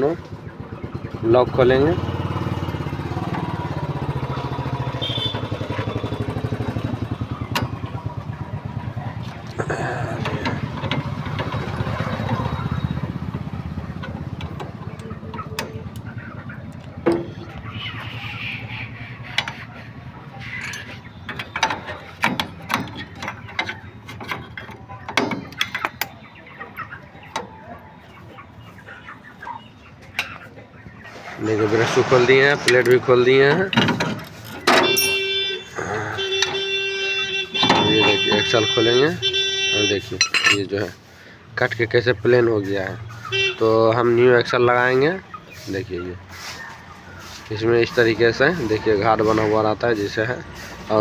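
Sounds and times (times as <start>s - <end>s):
rhythmic axle grinding: 0.0s - 29.4s, 30.6s - 51.0s
metal tools clicking and knocking: 20.4s - 26.2s, 33.7s - 35.4s, 40.2s - 40.9s.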